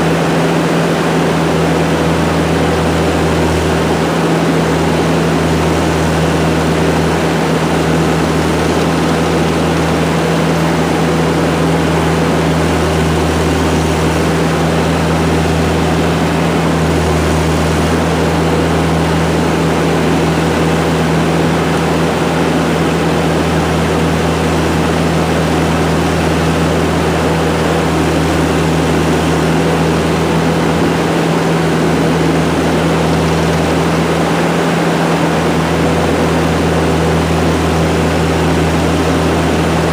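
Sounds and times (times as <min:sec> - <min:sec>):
diesel engine droning: 0:00.0 - 0:39.9.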